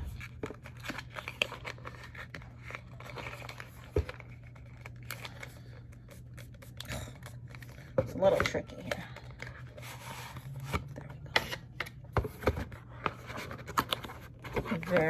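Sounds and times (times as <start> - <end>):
packaging rustling: 0.0 - 8.0.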